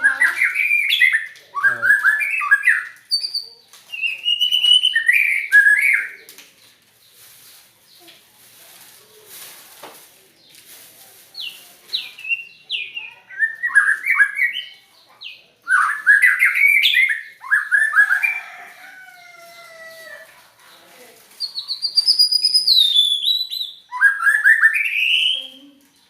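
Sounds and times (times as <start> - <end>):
bird singing whistled notes: 0.0 - 6.2, 11.4 - 14.8, 15.7 - 18.4, 21.5 - 25.6.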